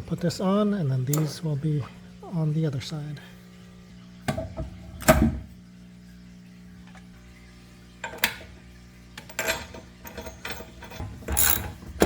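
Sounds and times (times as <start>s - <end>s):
faint steady hum: 0.0s - 12.0s
metal parts clinking and knocking: 9.2s - 12.0s.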